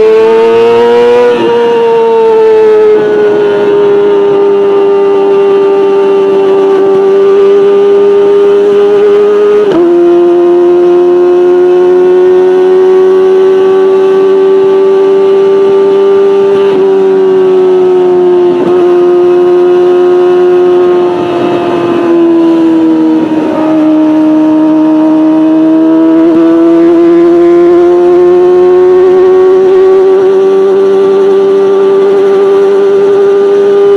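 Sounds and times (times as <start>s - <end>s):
motorcycle engine howling at high revs: 0.0s - 33.9s.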